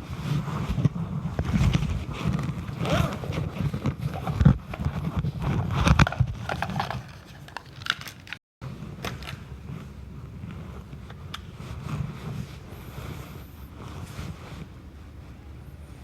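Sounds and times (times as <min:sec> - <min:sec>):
microphone handling noise: 0:00.0 - 0:07.2
clicks and scrapes: 0:00.1 - 0:12.6.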